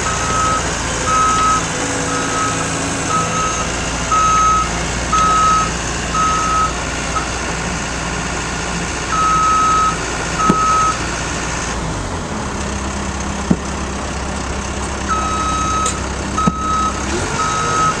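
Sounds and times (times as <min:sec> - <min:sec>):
diesel engine running: 0:00.0 - 0:18.0
backup alarm beeping in pairs: 0:00.1 - 0:06.7, 0:09.2 - 0:11.0, 0:15.1 - 0:18.0.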